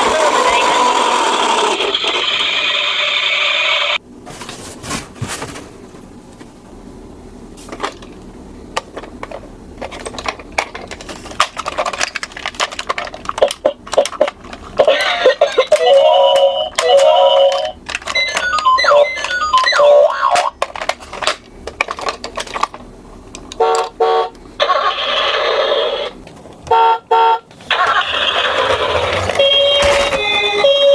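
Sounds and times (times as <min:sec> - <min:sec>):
plastic toy cars clicking: 0:08.8 - 0:24.0, 0:27.7 - 0:30.6
toy electronic siren: 0:14.9 - 0:20.5, 0:27.7 - 0:30.9.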